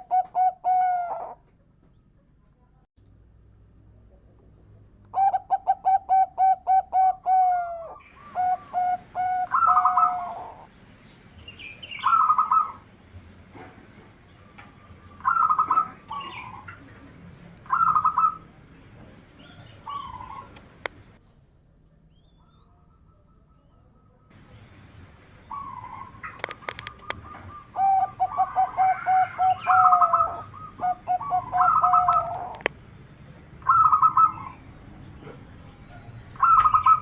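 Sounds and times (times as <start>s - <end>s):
dove cooing: 0.0s - 1.4s, 5.1s - 10.7s, 11.8s - 12.9s, 14.4s - 17.0s, 17.6s - 18.6s, 19.4s - 21.2s, 25.3s - 32.7s, 33.6s - 34.6s, 36.0s - 37.0s.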